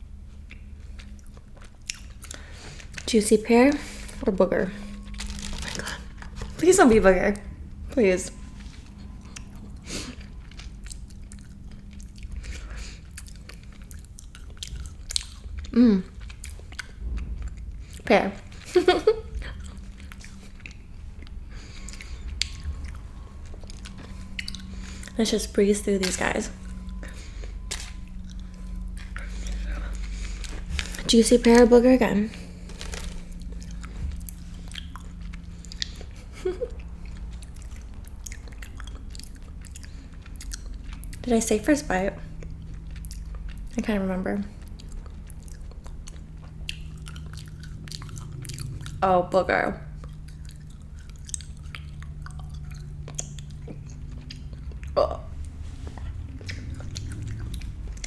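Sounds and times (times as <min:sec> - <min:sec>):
chewing jelly bean: 0:00.0 - 0:58.0
wet mouth clicks: 0:50.0 - 0:58.0.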